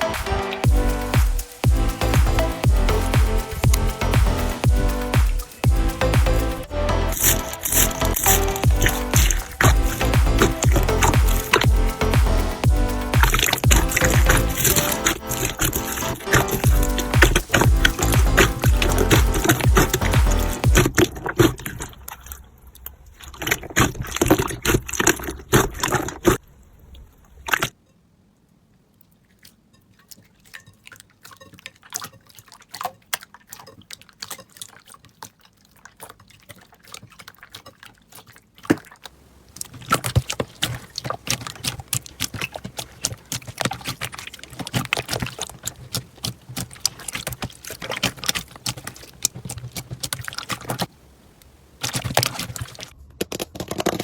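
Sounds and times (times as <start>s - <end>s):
slime crackling and popping: 1.1s - 22.2s, 38.9s - 50.9s, 51.8s - 54.0s.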